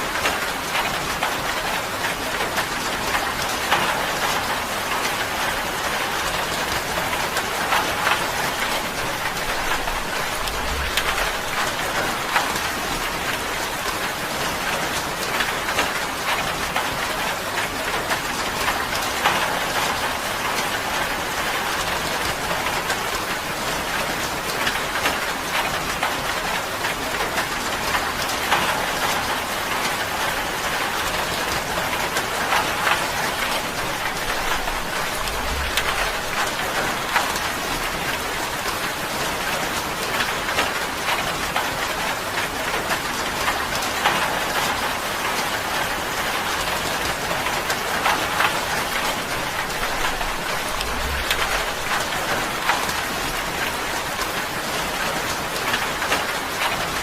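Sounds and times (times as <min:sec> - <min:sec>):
heavy rain on a tin roof: 0:00.0 - 0:57.0.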